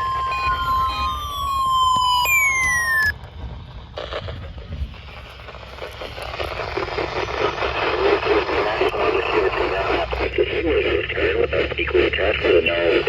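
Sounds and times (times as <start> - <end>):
tone gliding down in pitch: 0.0 - 3.1
steady alarm beep: 0.0 - 3.2
radio static hiss: 0.0 - 13.0.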